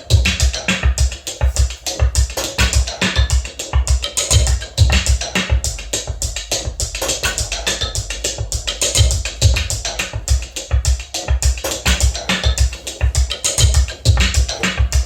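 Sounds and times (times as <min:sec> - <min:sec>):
mechanical sequencer beat: 0:00.0 - 0:15.0.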